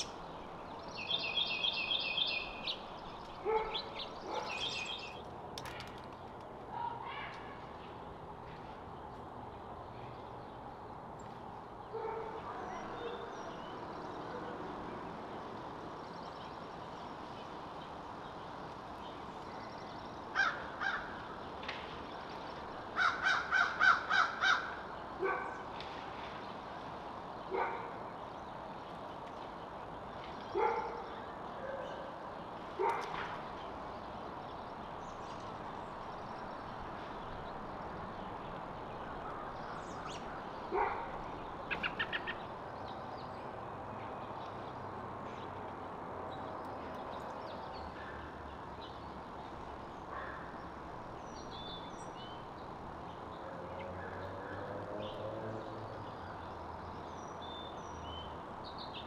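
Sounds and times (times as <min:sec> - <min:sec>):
steady outdoor hiss: 0:00.0 - 0:59.0
bird calling: 0:03.4 - 0:05.2, 0:41.7 - 0:42.4.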